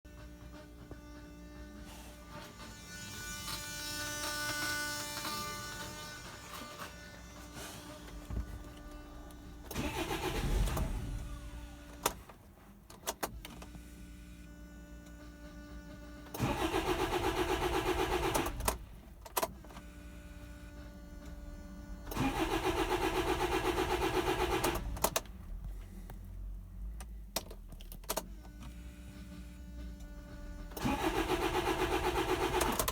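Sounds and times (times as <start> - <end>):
electric fuel pump buzzing: 0.1 - 32.9
diesel engine cranking on starter: 6.2 - 13.8, 16.3 - 32.9.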